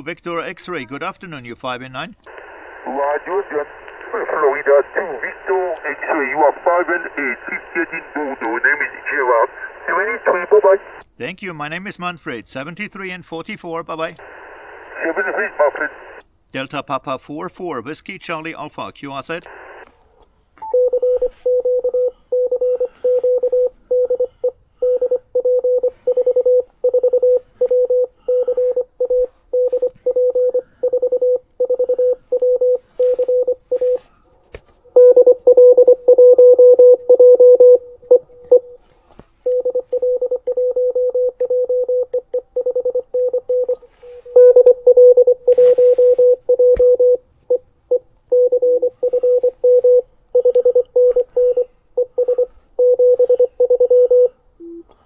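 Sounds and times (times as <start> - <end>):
morse code tone: 20.6 - 34.1, 35.0 - 38.8, 39.5 - 54.8.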